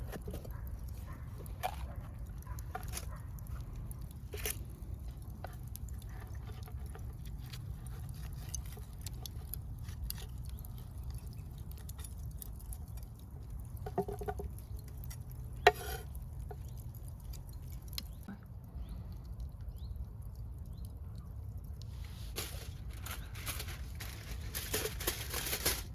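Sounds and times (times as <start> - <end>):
small clicks and handling noises: 0.0 - 18.6.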